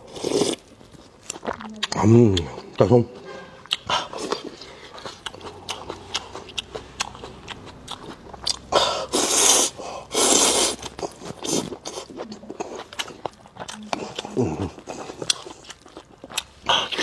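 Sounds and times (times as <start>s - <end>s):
wet chewing with mouth clicks: 0.0s - 3.0s, 3.6s - 17.0s
loud noodle slurps: 9.0s - 11.8s.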